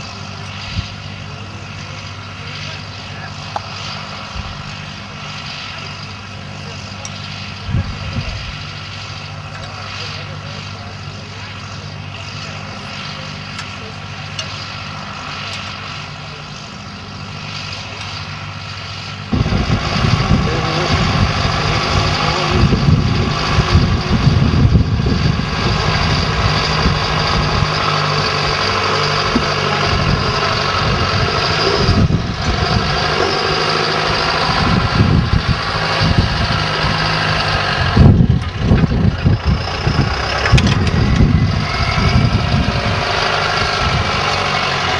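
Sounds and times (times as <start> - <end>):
tractor engine running: 0.0 - 44.9
uneven low rumble: 19.3 - 44.2.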